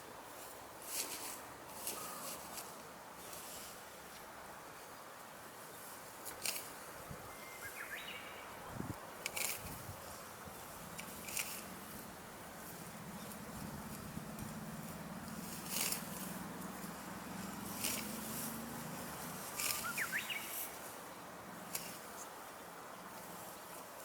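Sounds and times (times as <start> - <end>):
steady background hiss: 0.0 - 24.0
bird chirp: 7.2 - 8.8, 19.2 - 21.8.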